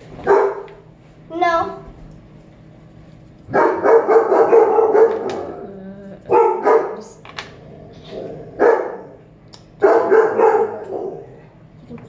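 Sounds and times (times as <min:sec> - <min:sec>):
dog barking loudly: 0:00.2 - 0:00.8, 0:03.5 - 0:05.6, 0:06.3 - 0:07.1, 0:08.6 - 0:09.2, 0:09.8 - 0:11.4.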